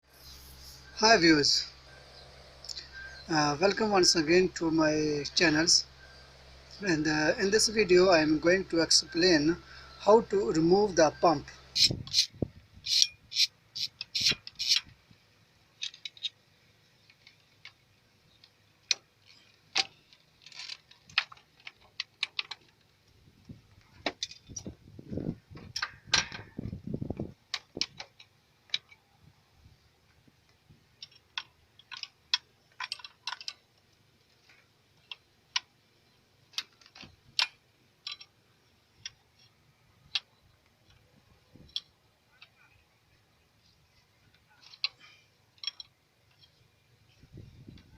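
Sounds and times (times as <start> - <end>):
metal tools clinking on metal: 12.9 - 14.9, 44.6 - 46.6.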